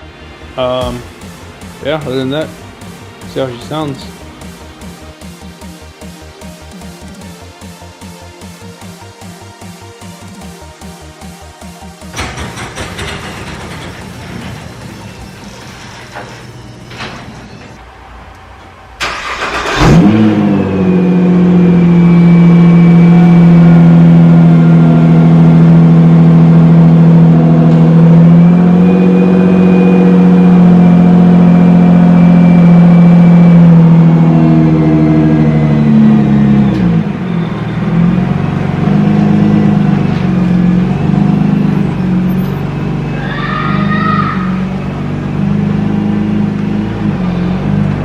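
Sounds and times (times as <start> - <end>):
car engine idling: 0.0 - 15.2, 19.0 - 43.2, 44.5 - 48.0
engine cranking: 12.0 - 16.1, 19.0 - 20.1.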